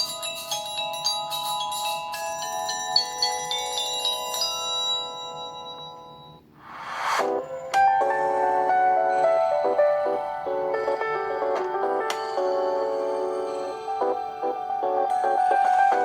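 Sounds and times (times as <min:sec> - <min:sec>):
chiming bell-like ringtone: 0:00.0 - 0:06.5, 0:07.3 - 0:16.0
rising whoosh: 0:06.6 - 0:07.7.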